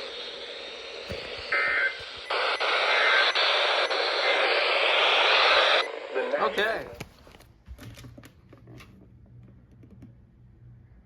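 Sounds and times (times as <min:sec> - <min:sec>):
radio static hiss: 0:00.0 - 0:07.0.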